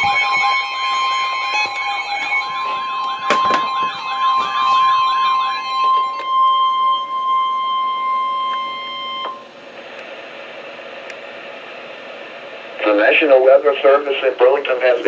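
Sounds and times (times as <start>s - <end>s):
warbling alarm tone: 0.0s - 9.7s
steady high-pitched alarm tone: 0.0s - 13.1s.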